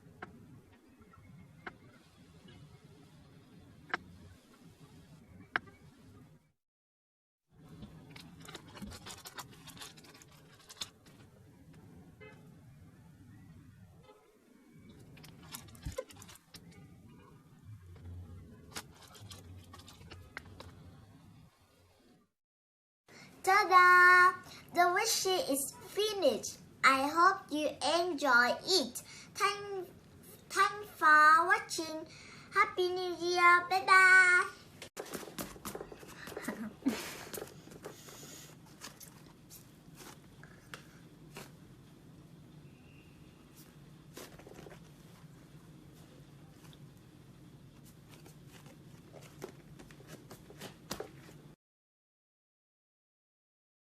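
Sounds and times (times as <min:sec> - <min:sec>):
low room hum: 0:34.1 - 0:51.6.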